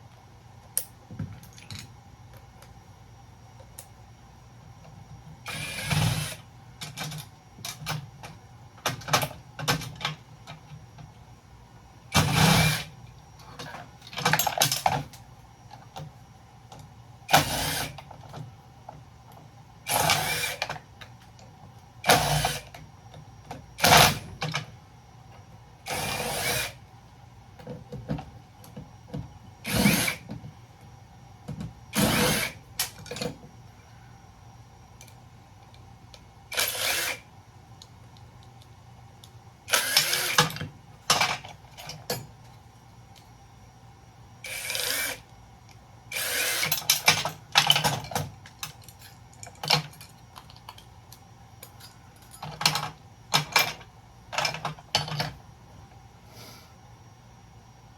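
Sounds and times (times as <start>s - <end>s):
power drill bursts: 5.5s - 6.4s, 12.1s - 12.9s, 17.3s - 18.0s, 19.9s - 20.6s, 22.0s - 22.6s, 25.9s - 26.8s, 29.6s - 30.2s, 31.9s - 32.6s, 36.5s - 37.2s, 39.7s - 40.4s, 44.5s - 45.2s, 46.1s - 46.7s.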